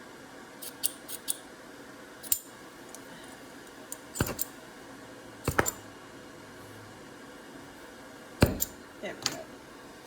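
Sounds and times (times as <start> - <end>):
steady background hum: 0.0 - 10.0
tools clicking and clinking: 2.2 - 2.5, 3.9 - 4.5, 5.5 - 5.8.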